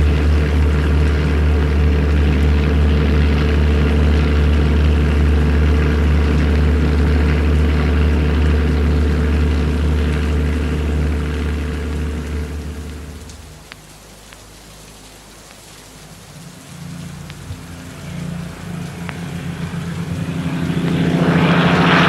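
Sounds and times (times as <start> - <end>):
propeller aircraft engines droning: 0.0 - 22.0
faint clicks: 12.6 - 17.7.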